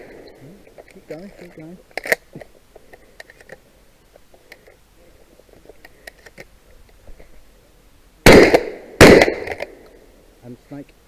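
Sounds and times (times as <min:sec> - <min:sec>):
faint clicks and handling noises: 0:00.7 - 0:07.4
loud shotgun shot: 0:08.2 - 0:09.9.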